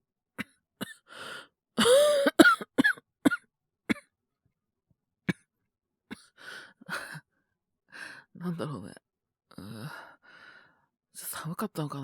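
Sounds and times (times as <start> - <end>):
man coughing: 1.8 - 4.0.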